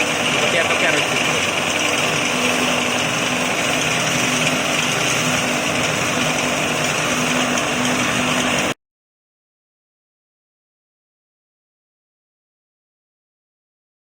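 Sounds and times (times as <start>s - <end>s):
grinding machine whirring: 0.0s - 8.8s.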